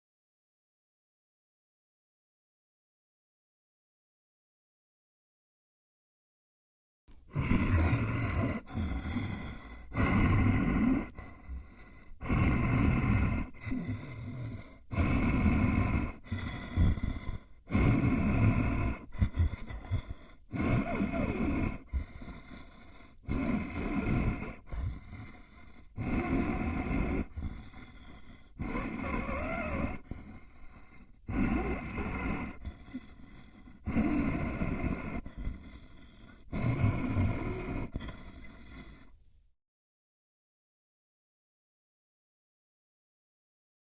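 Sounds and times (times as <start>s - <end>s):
rough voice gasping and gurgling: 7.2s - 39.2s.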